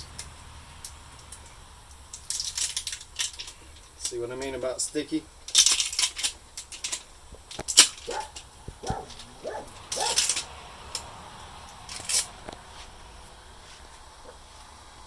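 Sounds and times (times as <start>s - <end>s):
clicks and rustles of handling: 0.1s - 13.0s
sticky strips squeaking: 5.6s - 10.6s.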